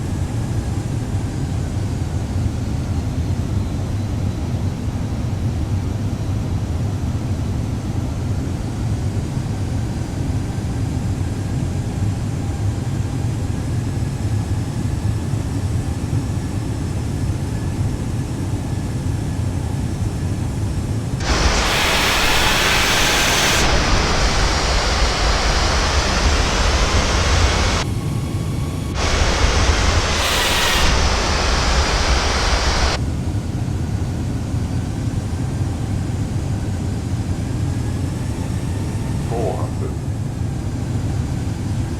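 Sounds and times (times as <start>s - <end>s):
loud rushing hiss: 21.2s - 27.8s, 28.9s - 33.0s
airliner cabin rumble: 21.2s - 27.9s, 28.5s - 33.0s.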